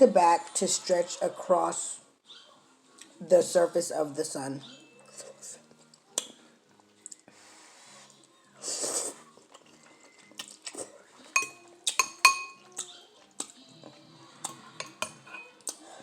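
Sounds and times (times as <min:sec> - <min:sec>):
utensil clinking against bowl: 0:11.4 - 0:12.6, 0:14.8 - 0:15.6.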